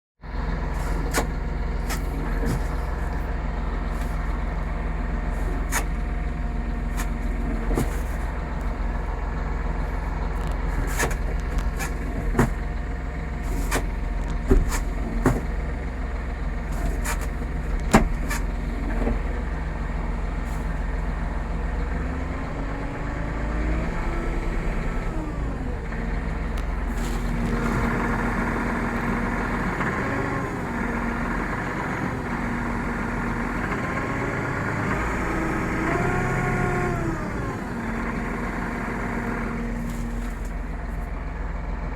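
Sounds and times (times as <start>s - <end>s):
tractor engine drone: 0.2s - 41.9s.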